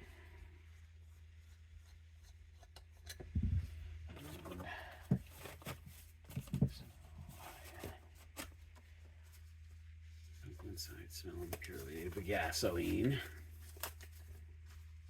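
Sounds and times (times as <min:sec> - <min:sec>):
steady low hum: 0:00.0 - 0:15.0
parts and tools knocking and rustling: 0:04.2 - 0:08.9.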